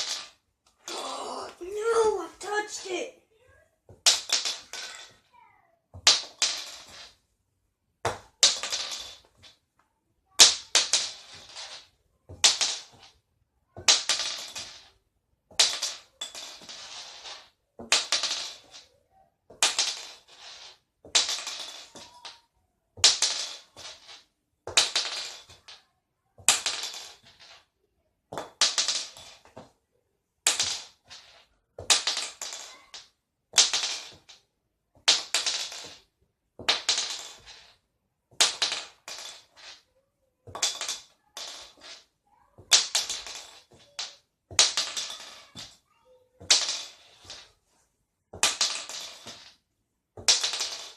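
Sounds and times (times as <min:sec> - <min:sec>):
shotgun shell clattering on hard surface: 0:26.5 - 0:27.6, 0:33.6 - 0:34.4, 0:36.6 - 0:37.7, 0:38.4 - 0:39.8, 0:40.5 - 0:42.1, 0:42.7 - 0:45.8, 0:46.4 - 0:47.5, 0:48.4 - 0:49.6, 0:50.2 - 0:50.9.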